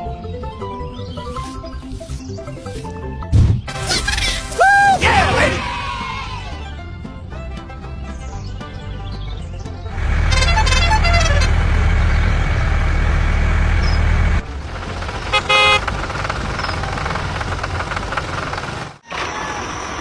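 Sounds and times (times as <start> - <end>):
loud low vehicle rumble: 6.3 - 20.0
steady engine noise: 9.7 - 20.0
short horn toot: 10.3 - 11.8.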